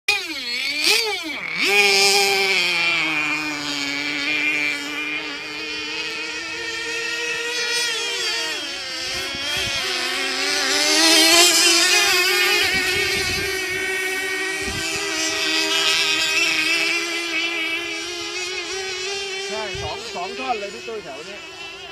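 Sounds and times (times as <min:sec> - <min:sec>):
high-pitched model boat engines whining: 0:00.1 - 0:21.9.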